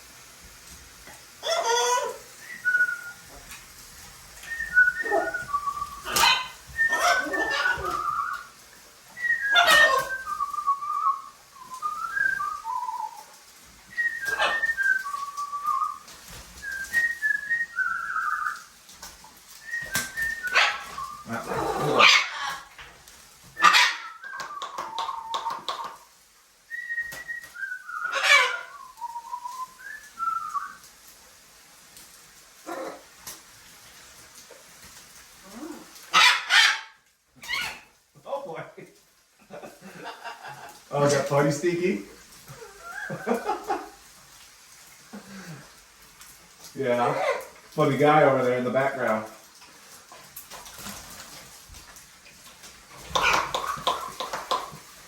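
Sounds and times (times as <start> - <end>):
parrots squawking: 1.4 - 2.3, 4.9 - 8.5, 9.2 - 10.4, 14.2 - 15.2, 20.3 - 22.9, 23.6 - 26.0, 28.0 - 28.9, 36.1 - 37.9, 47.0 - 47.6, 53.0 - 54.8
parrots whistling: 1.4 - 3.4, 4.4 - 8.6, 9.2 - 13.3, 13.9 - 18.7, 19.6 - 22.8, 23.6 - 26.0, 26.7 - 30.8, 35.5 - 37.9, 42.6 - 43.9, 53.1 - 54.8.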